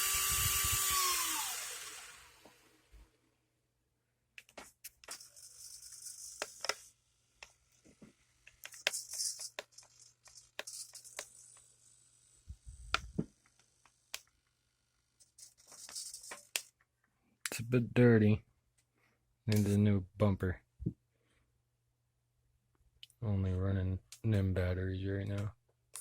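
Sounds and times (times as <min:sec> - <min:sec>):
electric motor whirring: 0:00.0 - 0:02.6.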